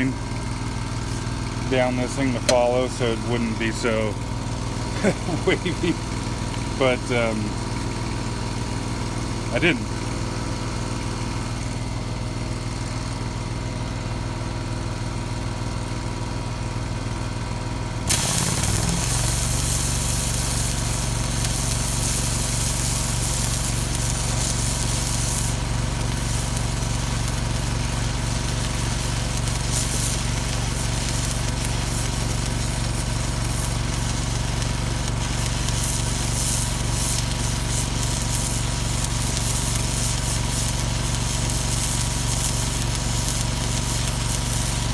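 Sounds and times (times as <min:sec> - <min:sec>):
arc welding crackling hiss: 0:01.0 - 0:04.0, 0:18.1 - 0:44.9
engine running: 0:18.1 - 0:44.9.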